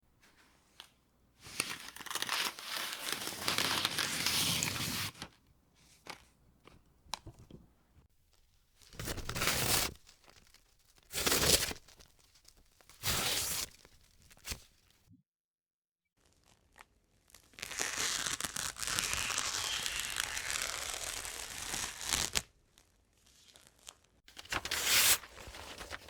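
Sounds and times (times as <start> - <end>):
paper tearing: 1.5 - 5.3, 9.0 - 10.0, 11.1 - 12.0, 13.0 - 14.6, 17.6 - 22.4, 24.4 - 26.0
paper crackling: 1.5 - 5.4, 24.3 - 26.0.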